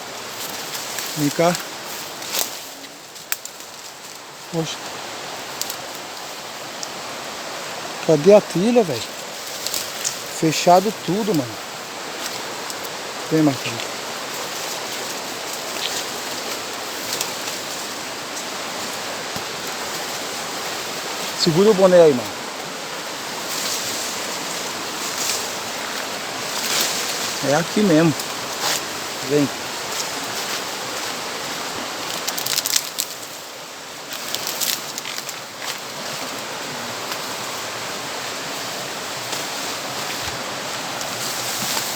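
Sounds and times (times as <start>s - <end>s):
rustling crackles: 0.0s - 7.1s, 8.0s - 41.9s
running water rushing: 0.0s - 41.9s.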